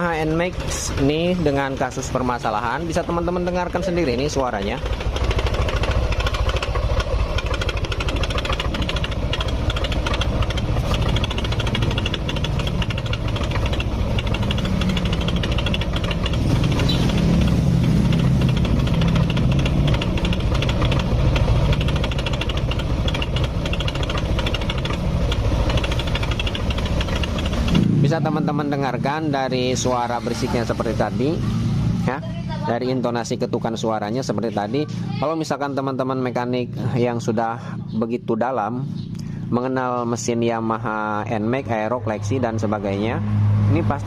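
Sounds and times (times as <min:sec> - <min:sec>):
rhythmic knocking tick of cam chain: 0:00.0 - 0:27.9
scooter engine running: 0:00.0 - 0:44.0.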